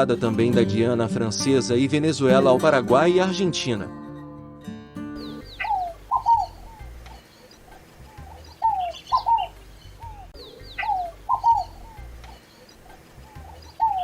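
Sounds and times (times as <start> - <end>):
dove singing: 5.1 - 14.0.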